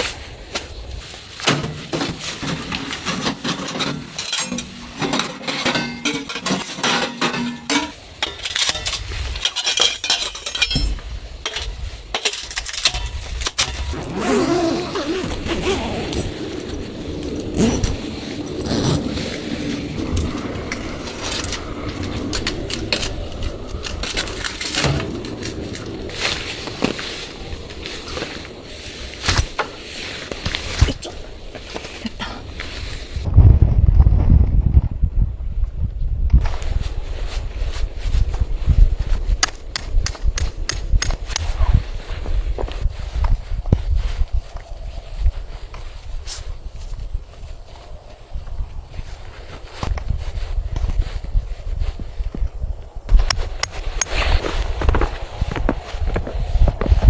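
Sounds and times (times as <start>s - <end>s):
objects knocking and clinking: 1.5s - 14.0s.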